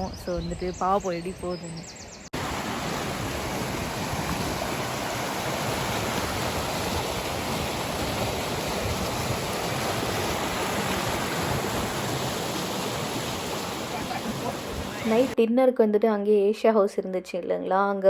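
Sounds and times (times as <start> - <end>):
river rushing: 2.4 - 15.4.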